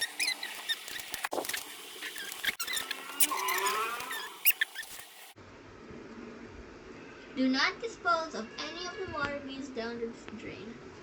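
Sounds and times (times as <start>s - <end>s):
short high squeaks: 0.0s - 5.3s.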